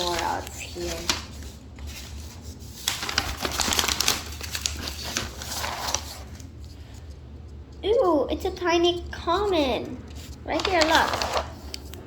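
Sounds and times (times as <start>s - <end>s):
toy packaging crinkling: 2.8s - 6.2s, 10.5s - 11.7s.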